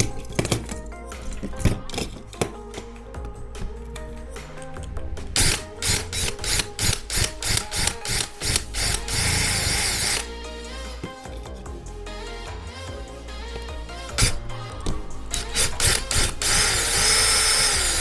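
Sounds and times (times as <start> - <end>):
background music: 0.0 - 18.0
power drill pulsing: 5.0 - 10.3, 14.1 - 18.0.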